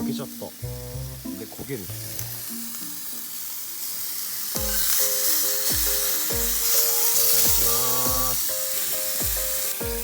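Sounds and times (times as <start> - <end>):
meat sizzling while frying: 0.0 - 10.0
electronic synth music with kick drum: 5.7 - 6.6, 7.5 - 8.4.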